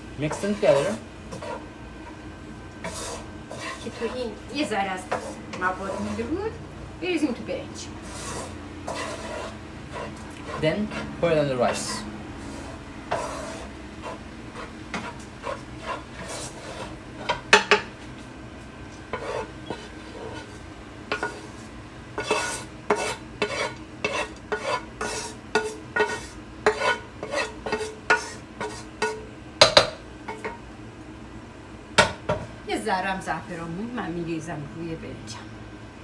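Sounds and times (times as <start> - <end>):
spoon scraping and tapping a dish: 8.1 - 18.0, 19.1 - 30.6.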